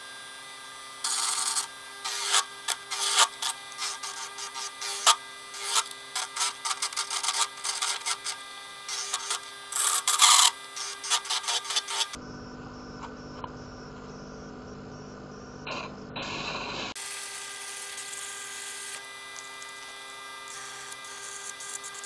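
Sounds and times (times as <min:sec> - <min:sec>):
lathe motor humming: 0:00.1 - 0:12.3
tool scraping spinning wood: 0:01.0 - 0:12.2.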